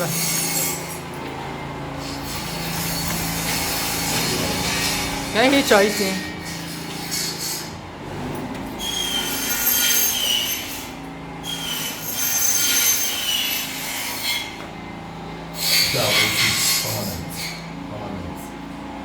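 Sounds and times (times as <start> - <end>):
harsh scraping with high squeal: 0.0 - 1.1, 2.0 - 7.8, 8.7 - 14.6, 15.5 - 17.8.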